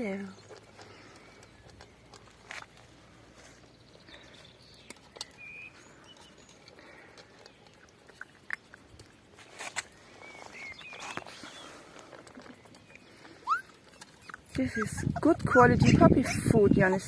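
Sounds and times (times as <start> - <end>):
puppies paws clicking and tapping: 0.0 - 17.0
puppies squeaking: 11.3 - 16.9.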